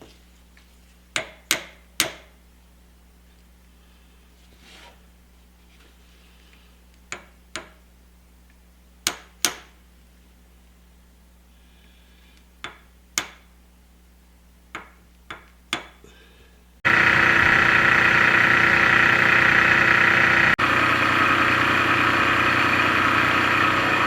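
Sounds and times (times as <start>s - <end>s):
milling machine cutting steel: 16.9s - 24.0s.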